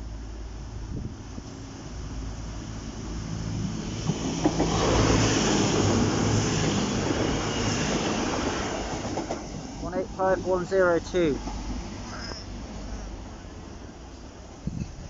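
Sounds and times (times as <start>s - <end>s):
low train engine hum: 0.0s - 15.0s
wheel-on-rail rush: 0.6s - 15.0s.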